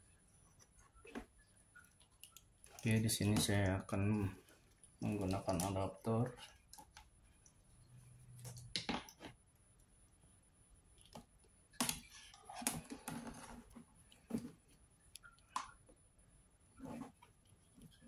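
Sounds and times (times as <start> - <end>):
hands handling electronic parts: 0.6 - 9.4.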